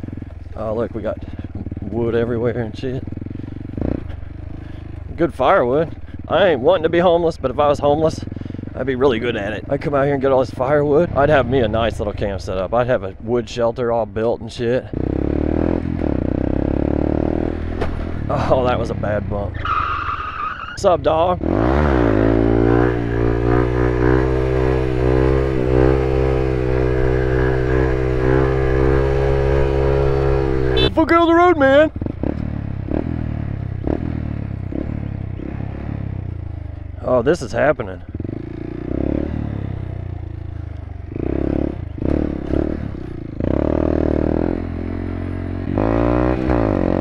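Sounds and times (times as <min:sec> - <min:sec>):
motorcycle engine running: 0:00.0 - 0:19.6, 0:21.0 - 0:47.0.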